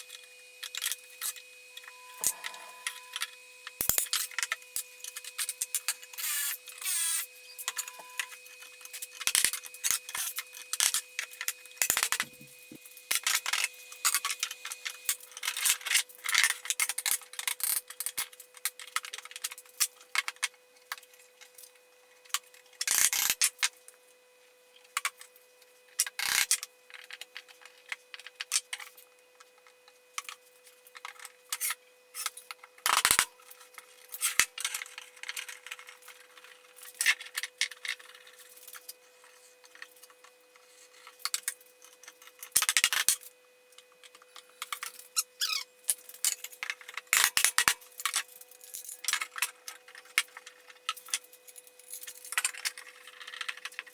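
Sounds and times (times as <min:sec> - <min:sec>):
tools and small parts clicking: 0:00.1 - 0:21.6, 0:41.0 - 0:53.9
faint hum: 0:00.6 - 0:08.8.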